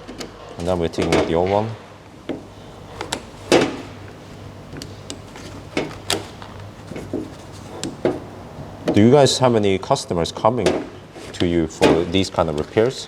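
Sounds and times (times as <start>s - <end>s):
low steady hum: 2.4s - 9.3s
door handle clicks and knocks: 2.6s - 9.0s.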